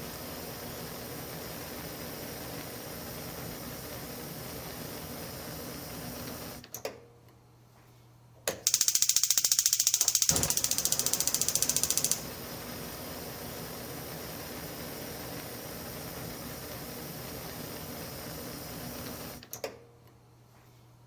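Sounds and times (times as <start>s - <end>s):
electric igniter ticking: 8.7s - 12.2s
gas burner hissing: 8.7s - 19.4s.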